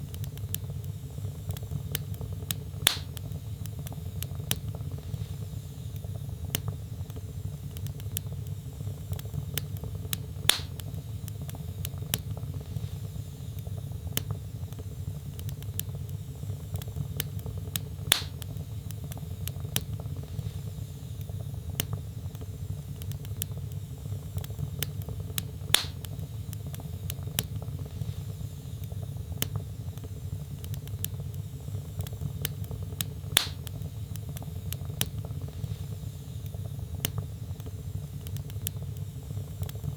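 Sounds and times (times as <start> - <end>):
fire crackling: 0.0 - 39.9
low rumble of flames: 0.0 - 39.9
loud fire pops: 0.1 - 5.5, 8.8 - 13.0, 15.2 - 20.8, 23.0 - 28.3, 29.4 - 36.0.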